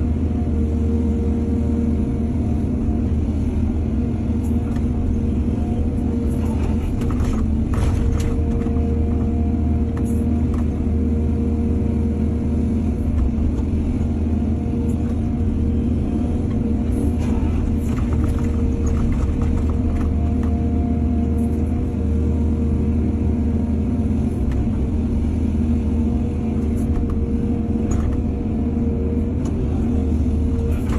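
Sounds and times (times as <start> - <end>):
diesel engine droning: 0.0 - 30.9.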